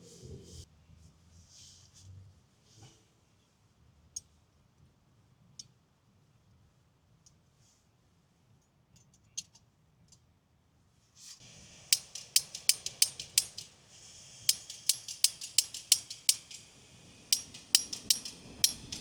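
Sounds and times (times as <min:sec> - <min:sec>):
gas stove hissing: 0:11.4 - 0:19.0
piezo igniter clicking: 0:11.4 - 0:19.0.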